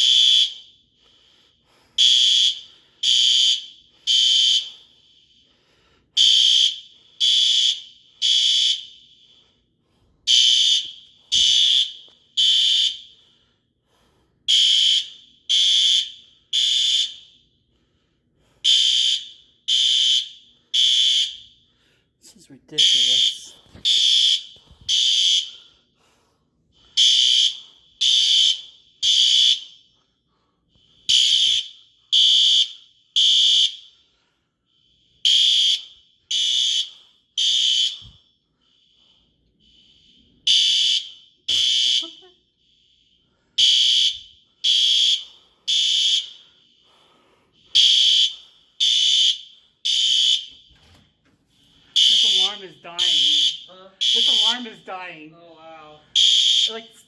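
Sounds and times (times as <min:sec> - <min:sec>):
fire alarm high-pitched beeps: 0:00.0 - 0:00.9, 0:02.0 - 0:05.4, 0:06.2 - 0:09.5, 0:10.2 - 0:13.2, 0:14.5 - 0:17.6, 0:18.6 - 0:21.7, 0:22.8 - 0:25.7, 0:26.9 - 0:30.0, 0:31.0 - 0:34.0, 0:35.2 - 0:38.2, 0:39.7 - 0:42.4, 0:43.6 - 0:46.6, 0:47.7 - 0:51.0, 0:51.8 - 0:54.9, 0:55.9 - 0:57.0
faint alarm beeping: 0:00.0 - 0:01.0, 0:02.0 - 0:05.5, 0:06.2 - 0:09.7, 0:10.3 - 0:13.2, 0:14.5 - 0:17.8, 0:18.7 - 0:25.8, 0:26.8 - 0:30.1, 0:31.0 - 0:50.9, 0:51.7 - 0:57.0.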